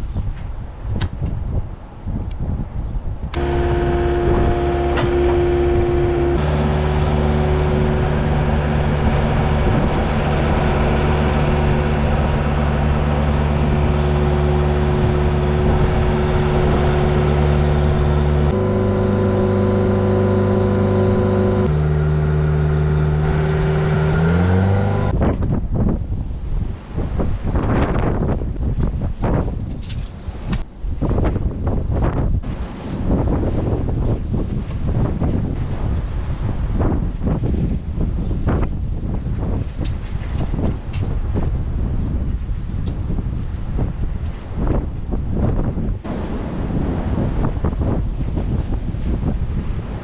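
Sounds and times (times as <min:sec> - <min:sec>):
drilling machine engine running: 0:03.4 - 0:25.1.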